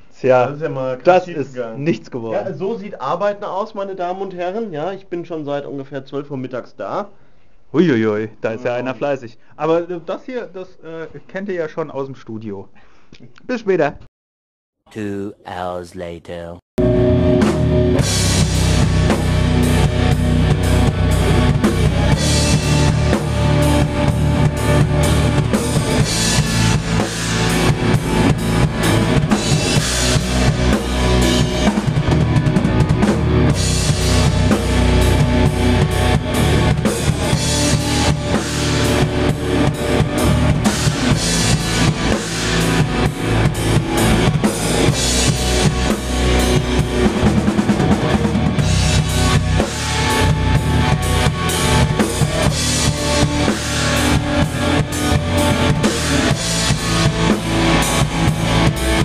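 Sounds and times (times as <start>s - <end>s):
electric guitar: 16.8s - 59.0s
drum kit beat: 17.3s - 59.0s.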